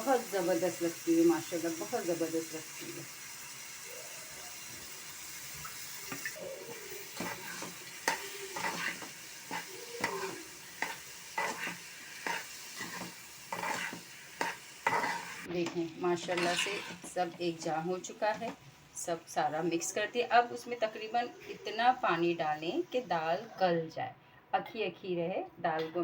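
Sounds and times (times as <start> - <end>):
food sizzling in a pot: 0.0 - 23.5
spoon scraping and knocking pot: 7.1 - 15.5, 16.2 - 17.5.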